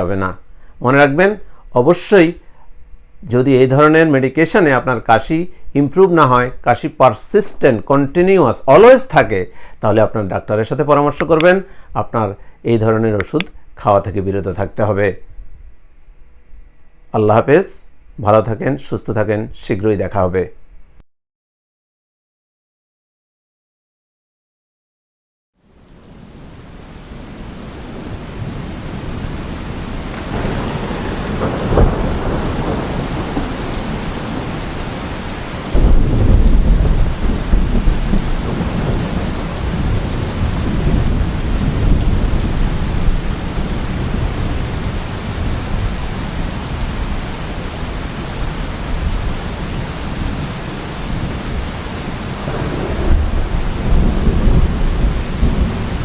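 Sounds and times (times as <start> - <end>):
steady rain: 25.6 - 56.0
rolling thunder: 28.0 - 47.0, 48.9 - 56.0
loud thunder clap: 30.1 - 34.6, 35.7 - 43.3, 52.4 - 56.0.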